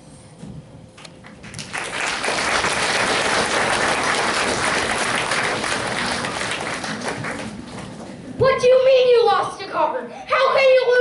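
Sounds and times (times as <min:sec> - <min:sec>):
audience applauding: 0:01.3 - 0:08.3.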